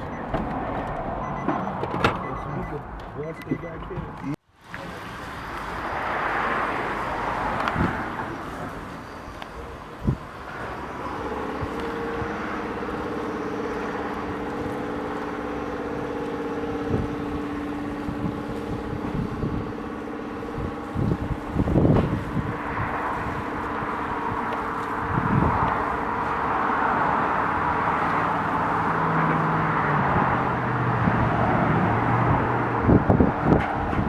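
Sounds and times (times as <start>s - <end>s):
wind on microphone: 16.5s - 27.9s, 29.9s - 34.0s.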